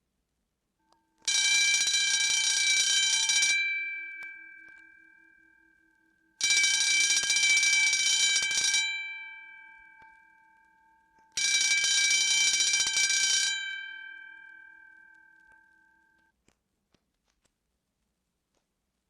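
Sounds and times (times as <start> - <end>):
electric alarm bell ringing: 1.2 - 16.3.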